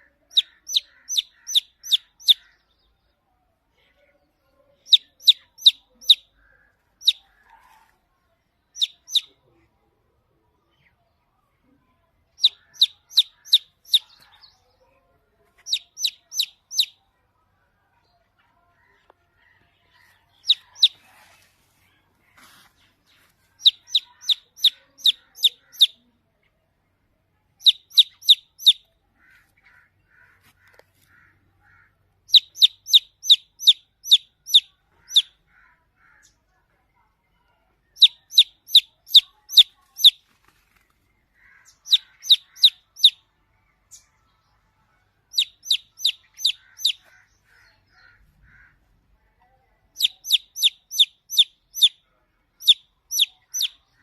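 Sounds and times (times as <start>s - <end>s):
baby chicks peeping: 0.0s - 2.6s, 4.8s - 7.9s, 8.8s - 9.6s, 12.3s - 14.7s, 15.6s - 17.0s, 18.9s - 21.6s, 22.4s - 26.0s, 27.6s - 29.8s, 32.3s - 35.4s, 38.0s - 40.9s, 41.5s - 43.2s, 45.3s - 48.7s, 50.0s - 52.0s, 52.6s - 54.0s
fainter lower peeps: 0.4s - 2.4s, 4.9s - 6.3s, 8.8s - 9.3s, 12.4s - 14.2s, 15.6s - 17.0s, 20.4s - 21.1s, 23.6s - 26.0s, 27.6s - 28.9s, 32.3s - 35.3s, 38.0s - 40.2s, 41.9s - 43.2s, 45.3s - 47.1s, 50.0s - 52.0s, 52.6s - 53.8s.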